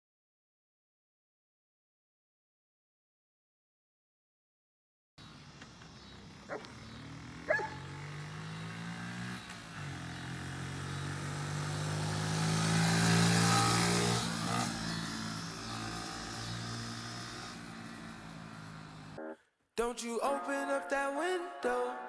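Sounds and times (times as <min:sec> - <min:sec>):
small motorbike engine running: 0:05.2 - 0:19.2.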